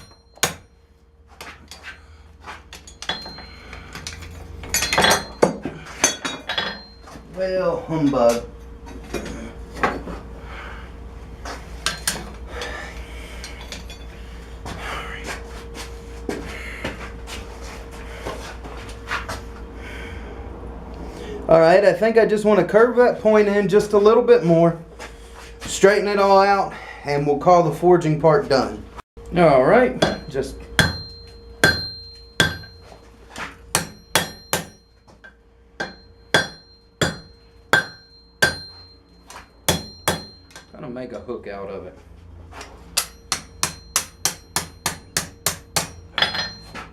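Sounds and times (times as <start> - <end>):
hammer striking steel on anvil: 0.0 - 0.8, 2.8 - 7.0, 11.8 - 12.3, 29.9 - 32.9, 33.7 - 40.8, 42.9 - 46.9
sharp metal knocks: 0.0 - 0.8, 2.8 - 7.0, 30.0 - 32.8, 33.7 - 39.0, 39.7 - 40.8, 43.0 - 46.9
steady hum: 0.0 - 46.9
metal tools clinking and clanking: 2.7 - 7.3, 11.8 - 12.7, 13.4 - 14.2, 45.9 - 46.9.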